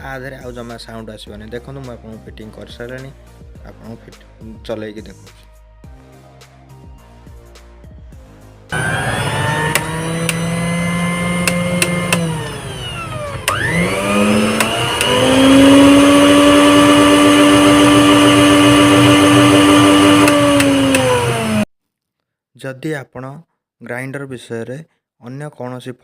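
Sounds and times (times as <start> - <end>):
mixer grinder motor whining: 8.7 - 21.7.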